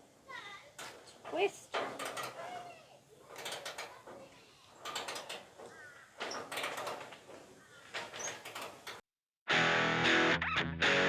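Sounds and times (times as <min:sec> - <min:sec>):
hand ratchet clicking: 0:01.7 - 0:02.6, 0:03.3 - 0:07.2, 0:08.0 - 0:09.0.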